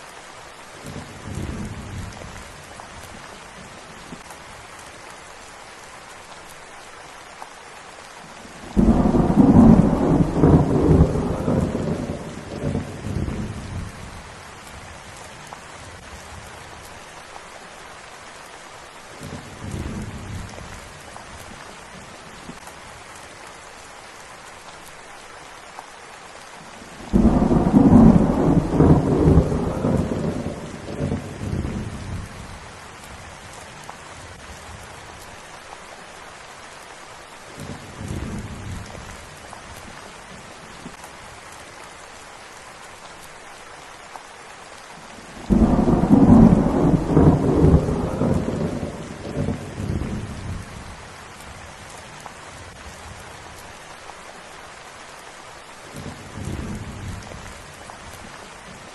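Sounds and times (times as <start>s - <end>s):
rain falling: 0.0s - 58.9s
thunder rumbling: 8.6s - 14.2s, 27.0s - 34.8s, 45.4s - 51.0s.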